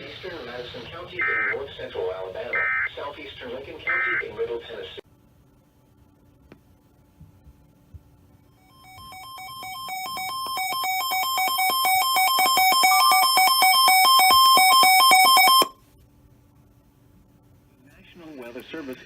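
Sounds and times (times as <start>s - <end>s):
warbling electronic alert alarm: 1.2s - 1.6s, 2.6s - 2.9s, 8.5s - 15.8s.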